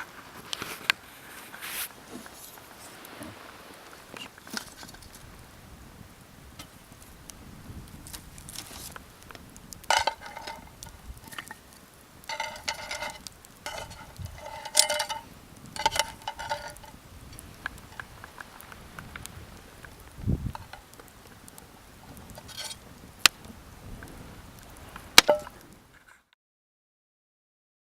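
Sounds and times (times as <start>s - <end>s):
utensil scraping metal pot: 9.8s - 18.4s, 22.1s - 23.3s.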